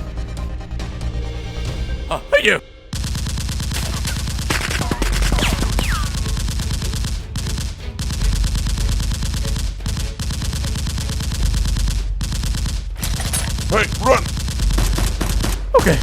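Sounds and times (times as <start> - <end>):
rapid automatic gunfire: 3.0 - 15.8.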